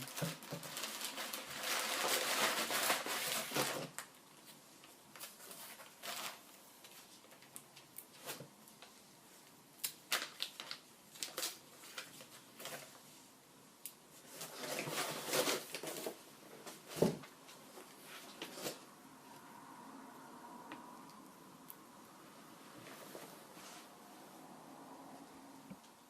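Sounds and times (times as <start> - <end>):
packaging rustling and crinkling: 0.0 - 8.9, 9.8 - 13.1, 14.2 - 18.9.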